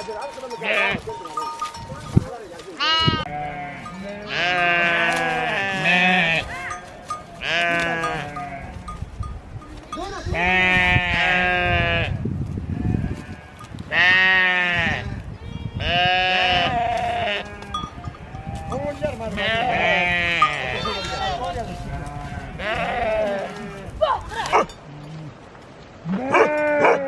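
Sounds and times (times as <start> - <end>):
sheep bleating: 2.8 - 8.9, 10.0 - 12.2, 12.8 - 24.0, 26.0 - 27.0.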